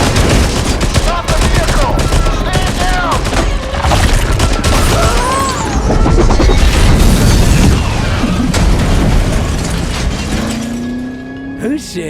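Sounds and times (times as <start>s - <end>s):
film music score: 0.0s - 12.0s
heavy booms and crashes: 6.1s - 10.8s.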